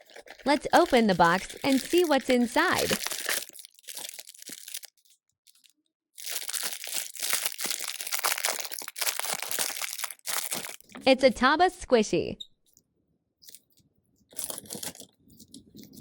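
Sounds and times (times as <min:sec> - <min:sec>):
packaging rustling and tearing: 0:00.0 - 0:10.9, 0:14.3 - 0:16.0.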